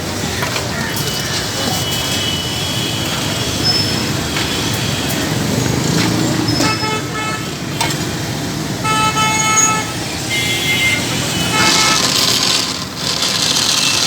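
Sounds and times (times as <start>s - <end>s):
street traffic noise: 0.0s - 14.0s
vehicle horn honking: 8.8s - 12.6s.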